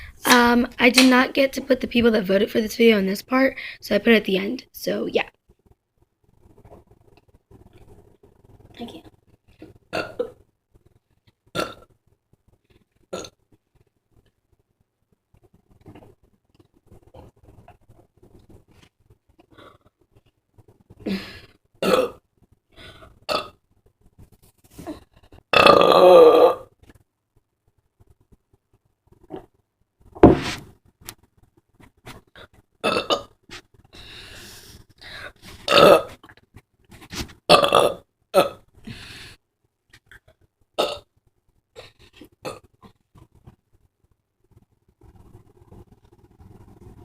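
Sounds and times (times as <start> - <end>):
person burping: 9.9 - 10.4, 11.6 - 11.9, 13.1 - 13.4, 21.1 - 22.2, 23.3 - 23.6, 25.5 - 26.7, 32.8 - 33.4, 35.7 - 36.2, 37.5 - 38.7, 40.8 - 41.1
low rumbling burp: 25.6 - 26.6, 37.5 - 38.6.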